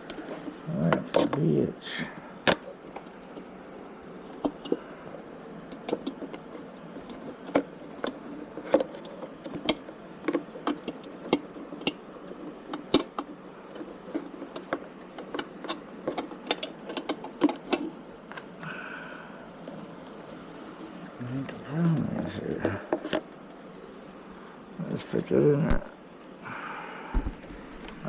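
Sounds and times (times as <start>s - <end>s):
steady low hiss: 0.0s - 28.0s
plastic parts clicking: 2.4s - 4.8s, 5.6s - 18.5s.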